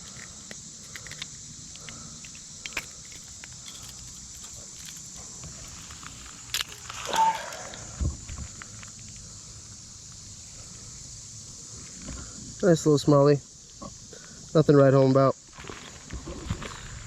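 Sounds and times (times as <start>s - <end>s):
fishing hooks and lure rattling: 0.0s - 7.8s
high insect drone: 0.0s - 17.0s
knocks and scrape with squeak: 6.7s - 7.7s.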